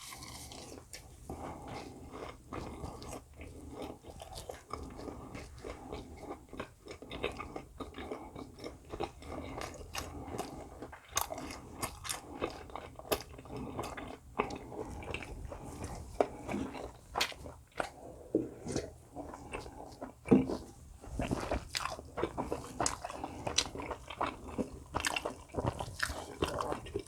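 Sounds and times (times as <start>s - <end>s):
person chewing food: 0.0s - 27.0s
mouth clicks and crunches: 18.6s - 27.0s.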